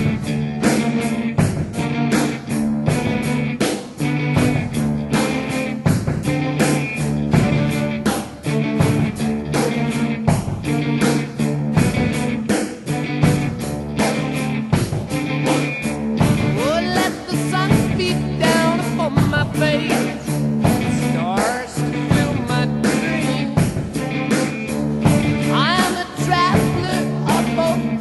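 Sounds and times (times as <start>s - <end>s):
rock music: 0.0s - 28.0s
man singing: 16.6s - 23.8s, 25.5s - 28.0s.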